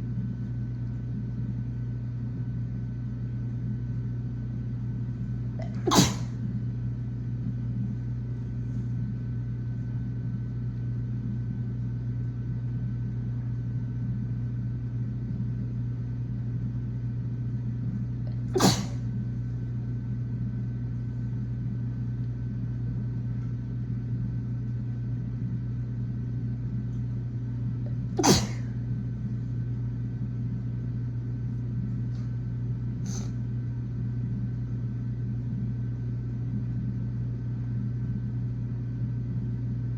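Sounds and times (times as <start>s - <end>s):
steady low hum: 0.0s - 39.9s
woman sneezing: 5.6s - 6.4s, 18.5s - 19.1s, 28.2s - 28.8s, 33.1s - 33.4s.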